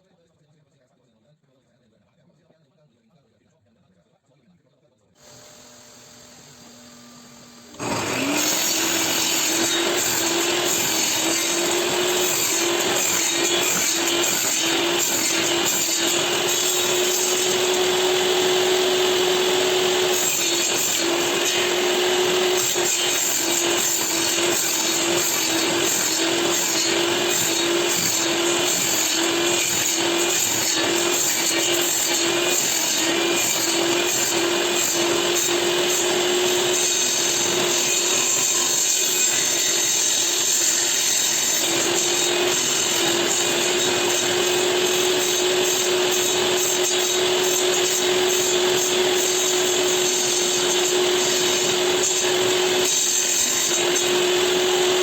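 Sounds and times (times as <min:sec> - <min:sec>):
table saw cutting wood: 0:05.2 - 0:55.0.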